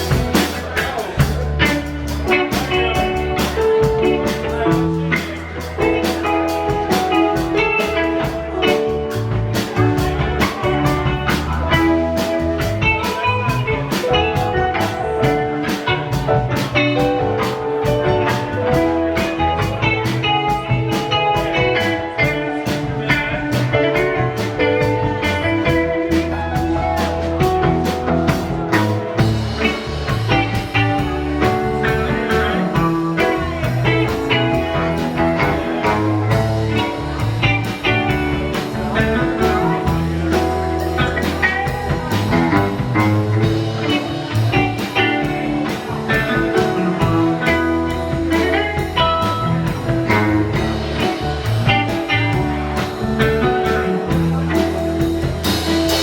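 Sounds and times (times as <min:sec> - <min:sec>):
live rock band playing: 0:00.0 - 0:56.0.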